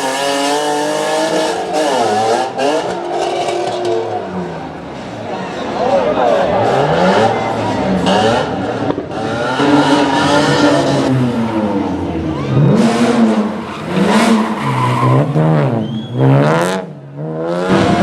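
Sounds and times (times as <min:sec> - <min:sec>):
rally car engine revving: 0:00.0 - 0:18.0.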